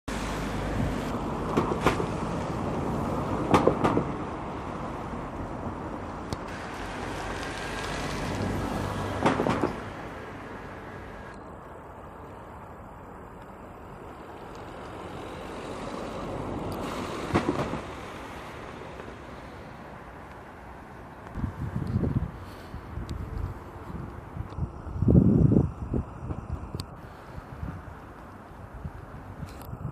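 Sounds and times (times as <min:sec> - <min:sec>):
road traffic passing: 0:00.1 - 0:29.9
sharp knocks: 0:03.5 - 0:04.1, 0:09.2 - 0:09.8.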